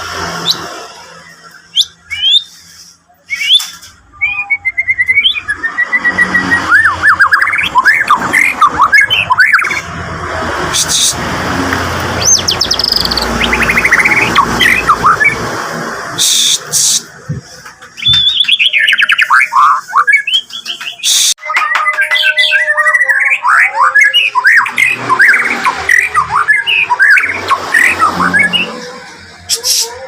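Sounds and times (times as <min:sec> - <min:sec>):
bird singing whistles and trills: 0:01.3 - 0:02.6, 0:03.2 - 0:09.8, 0:12.2 - 0:15.4, 0:18.0 - 0:28.7.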